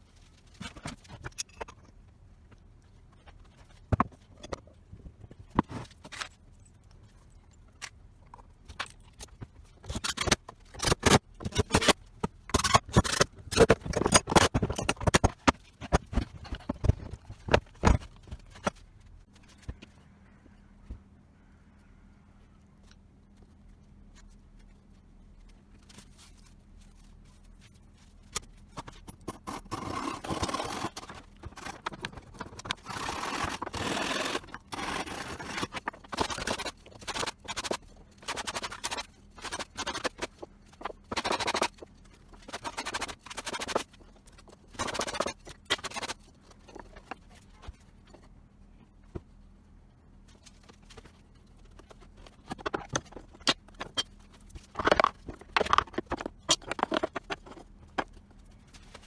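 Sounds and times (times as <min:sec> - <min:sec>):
irregular scraping and rubbing: 0:27.1 - 0:48.4.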